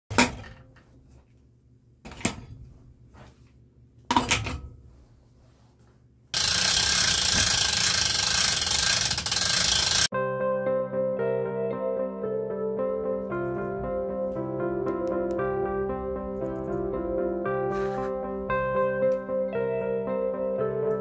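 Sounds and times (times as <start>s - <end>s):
power tool running: 6.4s - 10.1s.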